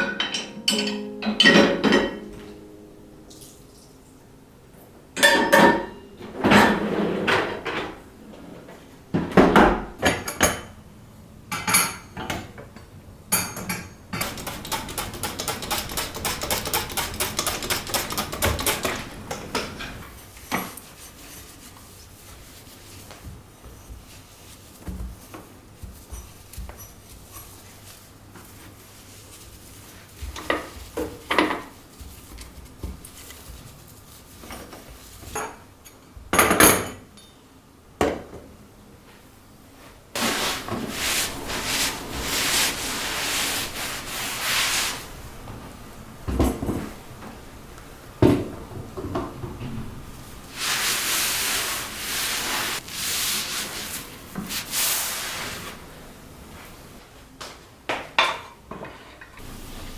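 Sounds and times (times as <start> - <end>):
scrubbing surface: 40.2 - 45.4, 50.5 - 55.8.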